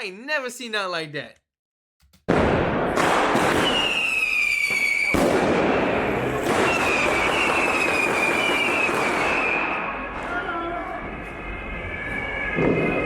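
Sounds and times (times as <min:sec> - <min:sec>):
firecrackers crackling: 0:02.4 - 0:10.3
whistling rockets: 0:02.6 - 0:10.4, 0:11.0 - 0:13.0
sharp firework bang: 0:04.7 - 0:07.9.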